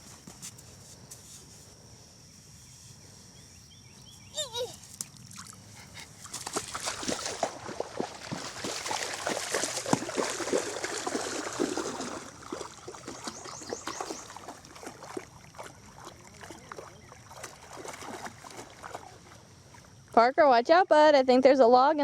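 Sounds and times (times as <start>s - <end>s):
person wading through water: 4.9s - 20.2s.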